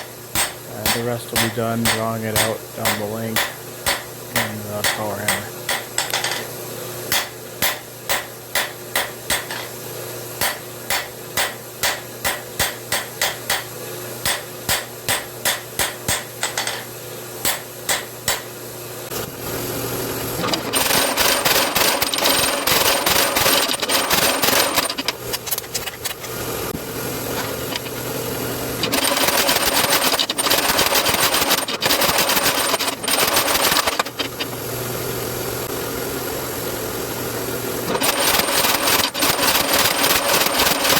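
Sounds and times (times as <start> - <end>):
power hammer rapid blows: 0.0 - 6.0, 20.4 - 25.1, 28.8 - 34.4, 37.9 - 40.9
hammer striking metal on anvil: 0.0 - 6.5, 7.1 - 9.7, 10.4 - 18.5.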